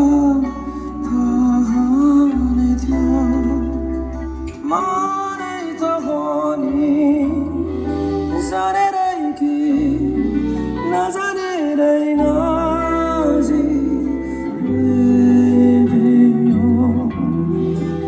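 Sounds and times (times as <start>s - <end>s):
bass: 0.0s - 18.0s
guitar: 0.0s - 18.0s
person singing: 0.0s - 18.0s.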